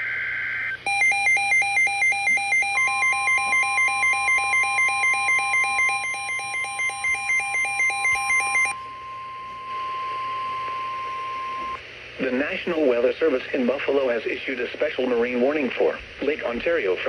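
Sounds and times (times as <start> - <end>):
steady warning alert tone: 0.9 - 8.7
digital data tones: 0.9 - 8.8
two-tone electronic alarm beeping: 0.9 - 11.8.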